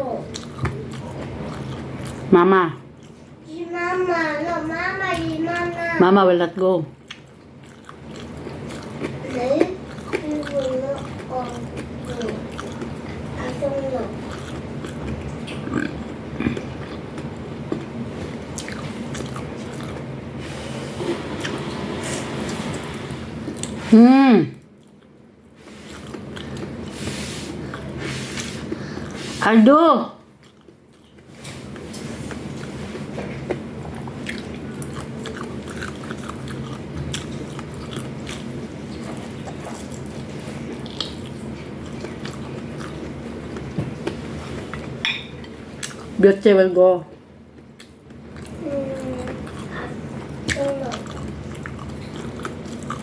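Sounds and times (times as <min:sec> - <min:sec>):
steady low hum: 0:00.0 - 0:53.0
chewing crunchy fried food: 0:00.2 - 0:02.3, 0:07.0 - 0:20.2, 0:24.6 - 0:29.3, 0:30.3 - 0:46.2, 0:47.4 - 0:53.0.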